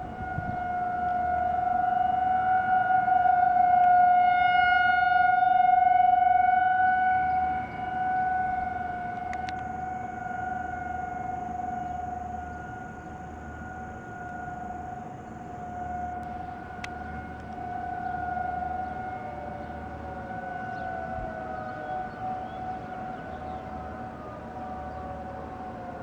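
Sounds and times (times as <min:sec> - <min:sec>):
distant warning sirens: 0:00.0 - 0:26.0
faint high-pitched whine: 0:07.1 - 0:26.0.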